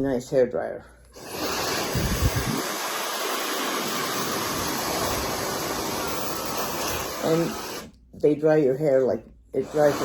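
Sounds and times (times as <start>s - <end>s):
hair dryer blowing air: 1.2s - 7.9s, 9.6s - 10.0s.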